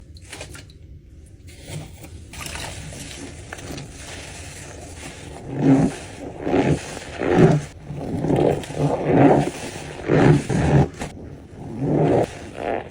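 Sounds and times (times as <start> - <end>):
wet sponge squelching: 0.0 - 0.8, 1.4 - 12.9.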